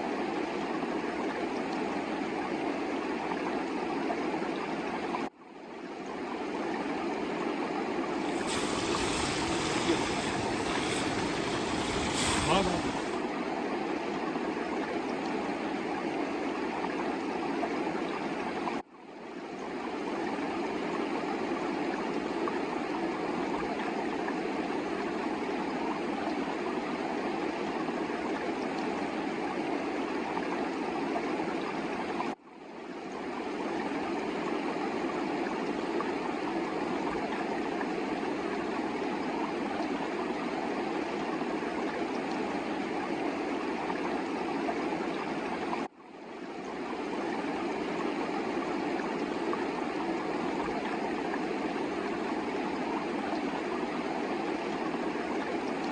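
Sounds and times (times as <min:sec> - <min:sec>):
mountain river rushing: 0:08.1 - 0:13.2.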